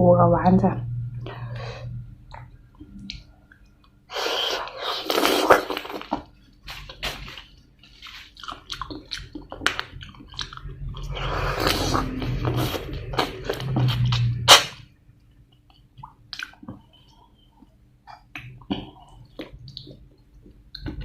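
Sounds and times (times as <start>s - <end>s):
close chewing with wet crunches: 8.0s - 11.2s.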